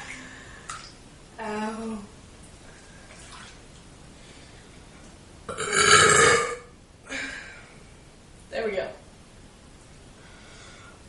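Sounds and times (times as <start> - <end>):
person burping: 5.5 - 6.7.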